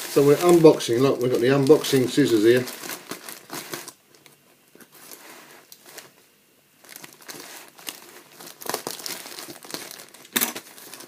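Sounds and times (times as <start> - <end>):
packaging tearing: 0.0 - 4.0, 6.8 - 11.0
parcel packaging crinkling: 0.0 - 4.3, 6.8 - 11.0.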